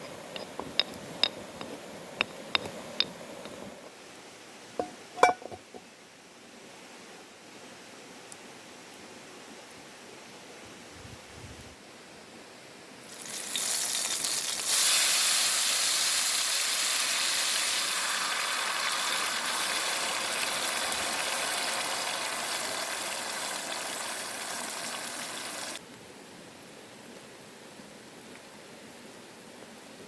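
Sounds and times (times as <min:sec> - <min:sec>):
food sizzling in hot oil: 0:13.0 - 0:25.8.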